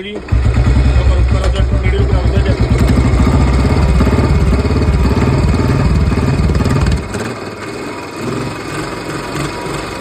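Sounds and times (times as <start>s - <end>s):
motorcycle engine thumping: 0.2s - 7.4s.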